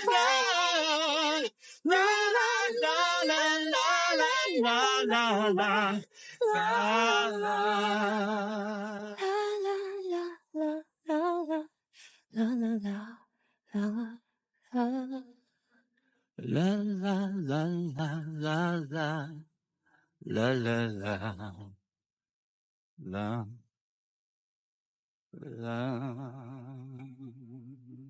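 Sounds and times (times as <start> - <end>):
high voice singing wordless vocalise: 0.0 - 11.7.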